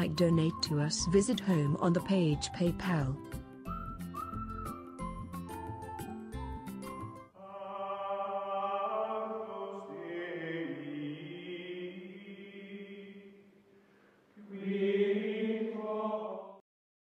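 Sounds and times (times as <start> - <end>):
slow chanting voices: 7.4 - 16.6.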